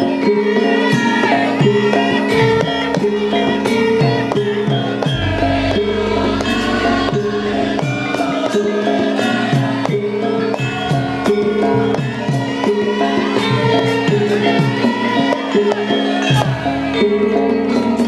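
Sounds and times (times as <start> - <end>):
metallophone notes: 0.0 - 18.0
drum strokes: 1.6 - 15.7
deep gong: 5.1 - 8.8.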